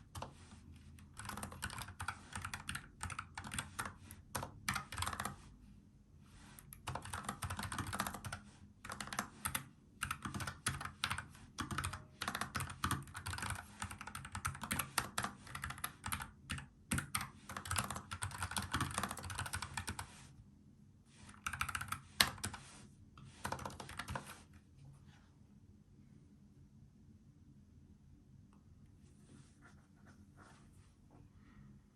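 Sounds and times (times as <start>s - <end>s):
mechanical keyboard typing: 1.0s - 5.4s, 6.7s - 20.1s, 21.3s - 22.6s, 23.4s - 24.4s.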